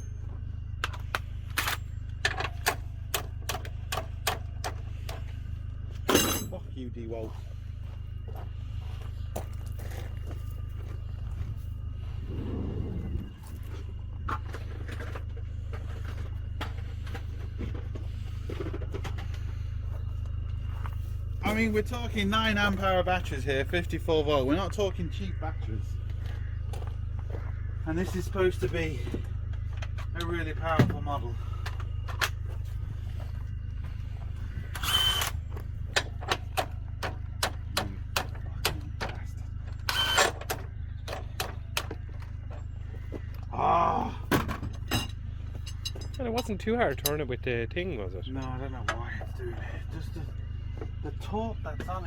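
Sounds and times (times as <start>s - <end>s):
steady low hum: 0.0s - 52.0s
vehicle engine idling: 0.0s - 52.0s.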